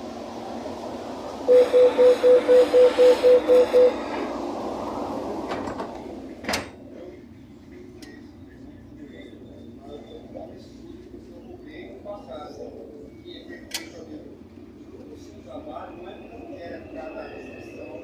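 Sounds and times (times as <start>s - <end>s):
hissing rush: 0.0s - 6.4s
train rumble: 0.0s - 18.0s
door warning beeps: 1.5s - 4.2s.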